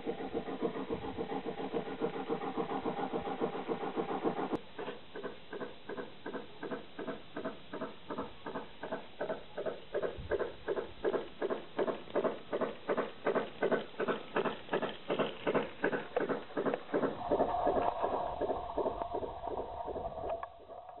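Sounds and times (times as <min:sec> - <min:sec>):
model steam locomotive chuffing: 0:00.0 - 0:20.8
steady tone: 0:17.0 - 0:21.0.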